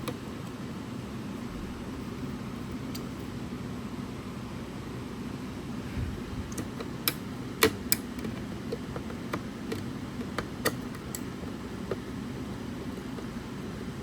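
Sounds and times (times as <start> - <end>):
steady low hum: 0.0 - 14.0
plastic and metal parts clicking: 6.5 - 12.1.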